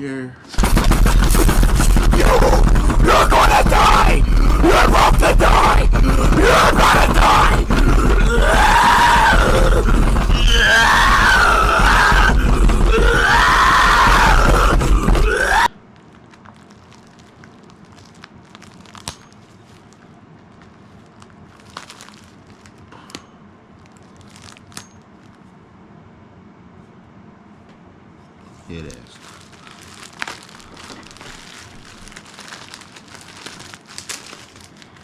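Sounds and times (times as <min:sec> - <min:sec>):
distorted voice screaming: 0:01.0 - 0:15.8
faint rustles: 0:28.2 - 0:35.0.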